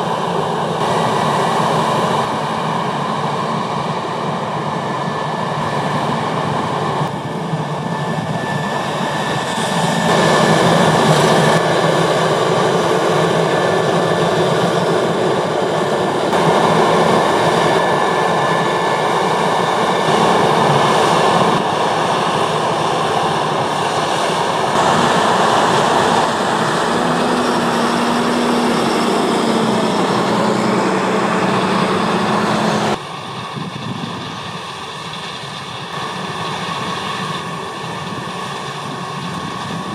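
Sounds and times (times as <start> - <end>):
combine harvester threshing: 24.7 - 33.0.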